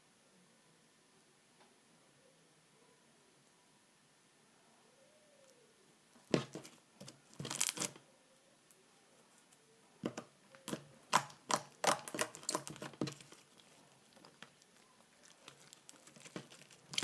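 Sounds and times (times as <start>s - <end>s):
slime clicking and popping: 10.1s - 13.4s.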